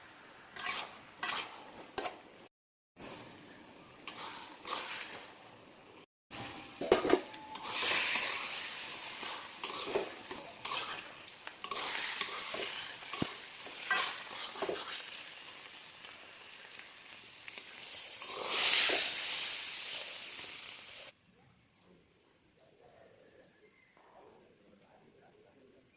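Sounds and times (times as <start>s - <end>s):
food sizzling in a pan: 0.0s - 2.2s, 3.0s - 21.2s
utensil stirring and knocking pan: 0.6s - 2.2s, 6.8s - 8.4s, 9.0s - 15.0s.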